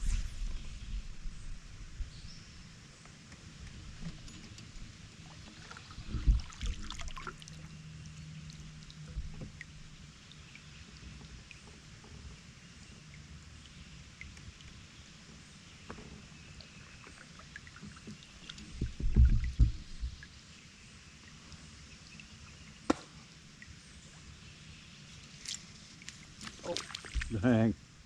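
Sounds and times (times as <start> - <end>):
water: 0.0 - 28.0
low rumbling bump: 6.0 - 7.0, 18.7 - 20.2
small knocks and ticks: 17.0 - 20.3.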